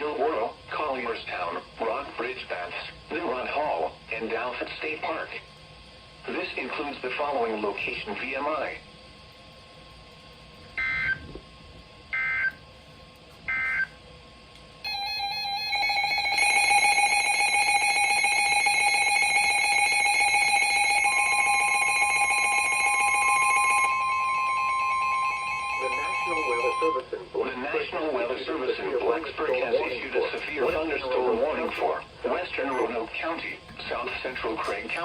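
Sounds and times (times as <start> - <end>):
steady attention tone: 14.8 - 35.0
data tone bursts: 14.9 - 27.0, 32.5 - 34.2.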